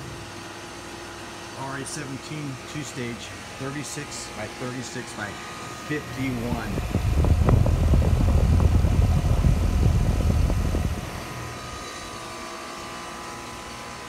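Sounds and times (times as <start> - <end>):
steady hum with faint tones: 0.0 - 14.0
wind buffeting microphone: 6.3 - 11.5.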